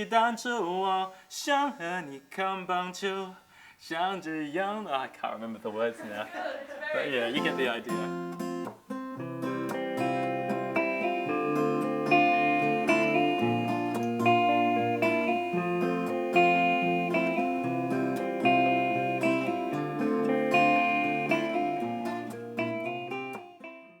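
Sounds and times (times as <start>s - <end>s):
acoustic guitar music: 6.0s - 24.0s.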